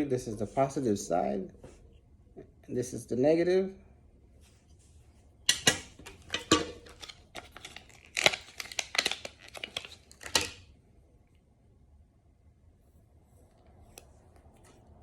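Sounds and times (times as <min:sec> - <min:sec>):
crinkly plastic crackling: 0:05.5 - 0:10.7.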